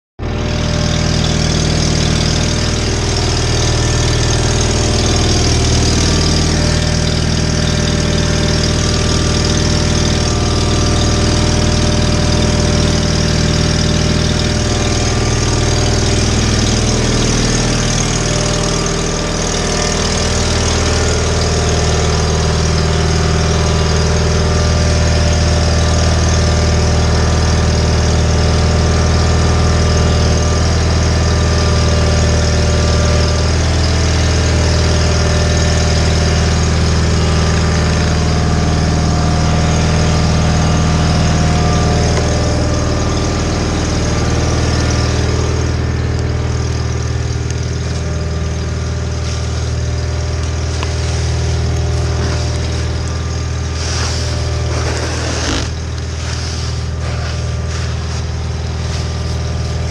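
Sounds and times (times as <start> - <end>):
garden tractor engine running: 0.2 - 59.9.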